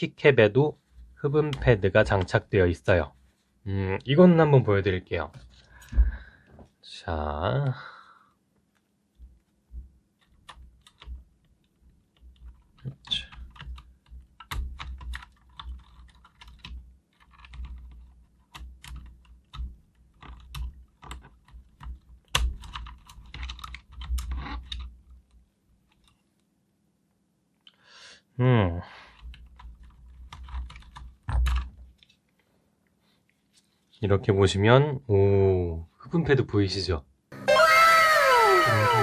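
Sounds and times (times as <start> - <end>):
plastic keyboard clicks and clacks: 12.1 - 26.2, 29.1 - 31.8.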